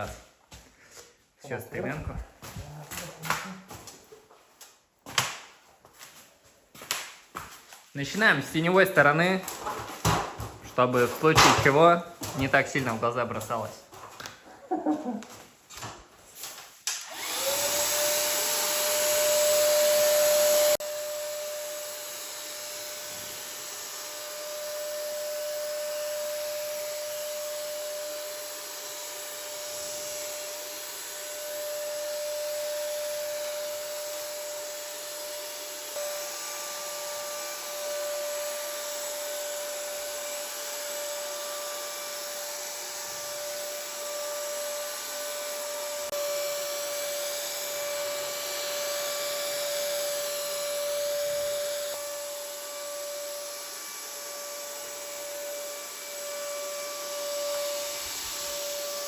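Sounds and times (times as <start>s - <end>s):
paint sprayer motor whine: 17.0s - 59.0s.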